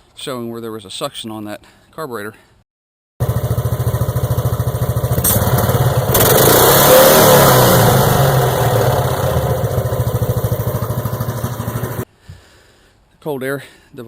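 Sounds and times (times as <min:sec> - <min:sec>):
kayak motor running: 0:03.2 - 0:12.0.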